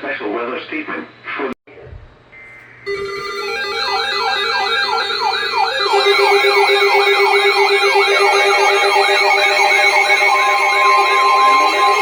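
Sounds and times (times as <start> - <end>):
electronic siren rapid falling sweeps: 2.9 - 12.0
pulsing electronic tones: 2.9 - 12.0.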